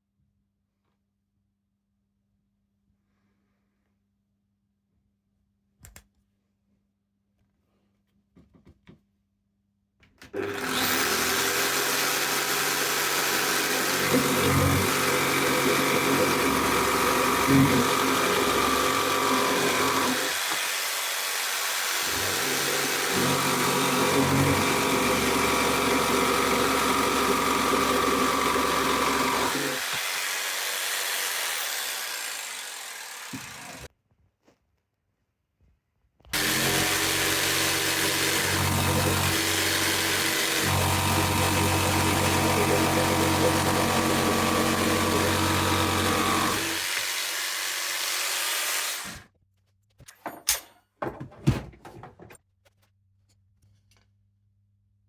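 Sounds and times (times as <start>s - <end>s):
electric jigsaw cutting wood: 10.3s - 33.9s, 36.4s - 49.3s.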